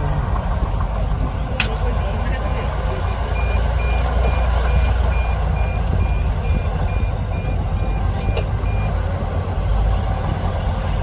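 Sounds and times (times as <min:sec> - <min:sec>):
diesel engine running: 0:00.0 - 0:11.0
reversing alarm beeping: 0:01.9 - 0:09.0.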